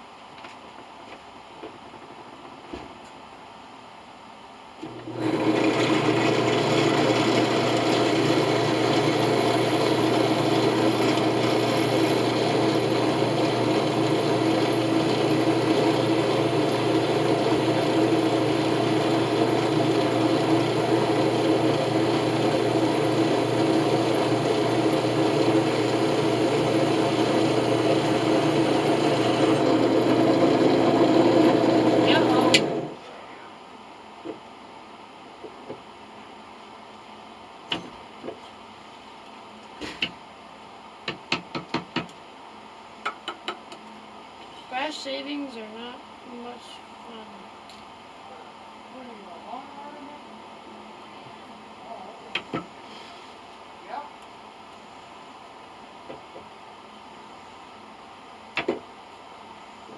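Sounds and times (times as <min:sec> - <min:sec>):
electric drill boring metal: 0:04.9 - 0:33.0.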